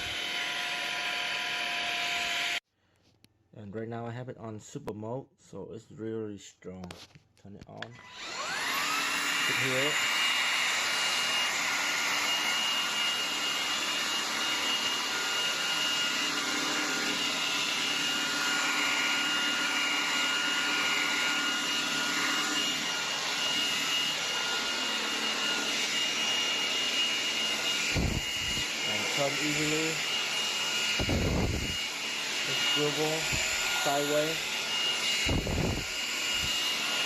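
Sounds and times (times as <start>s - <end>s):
stick vacuum running: 8.0s - 37.0s.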